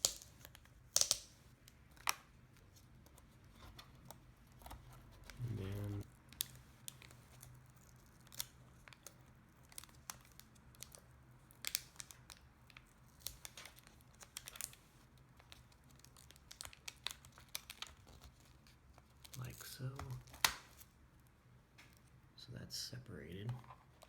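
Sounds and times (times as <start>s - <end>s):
adhesive tape peeling: 0.0s - 1.3s.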